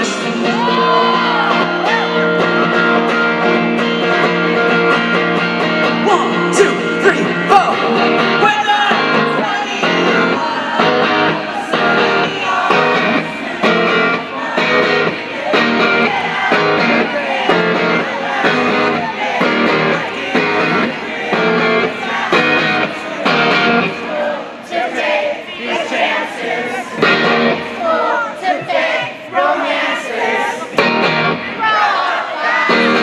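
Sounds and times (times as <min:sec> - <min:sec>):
guitar strummed: 0:00.0 - 0:24.2, 0:27.0 - 0:27.8, 0:30.7 - 0:31.6
person singing: 0:05.9 - 0:24.6.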